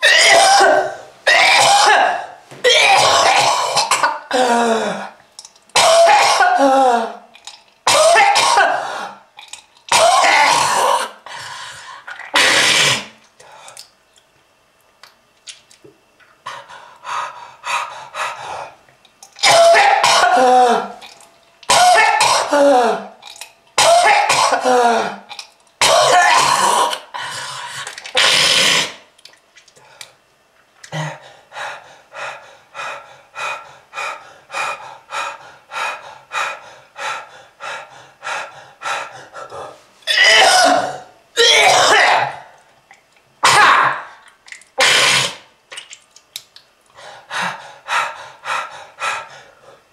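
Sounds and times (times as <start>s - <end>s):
person coughing hard: 0.0s - 5.1s, 5.8s - 7.2s, 7.9s - 9.2s, 9.9s - 11.2s, 12.3s - 13.1s, 19.4s - 21.0s, 21.7s - 23.1s, 23.8s - 25.2s, 25.8s - 27.1s, 40.1s - 42.5s, 43.4s - 44.1s, 44.8s - 45.4s.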